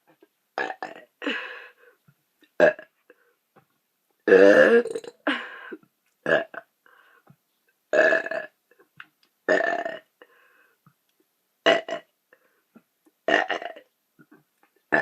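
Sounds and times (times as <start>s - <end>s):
woman burping: 0.6s - 1.4s, 2.6s - 2.9s, 4.3s - 5.5s, 6.2s - 6.7s, 9.5s - 10.1s, 11.7s - 12.1s, 13.3s - 15.0s.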